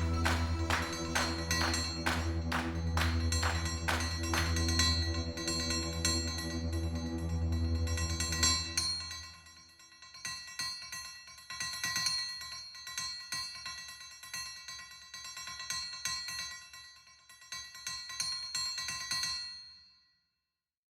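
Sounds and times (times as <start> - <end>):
bell-like chime music: 0.0 - 9.2.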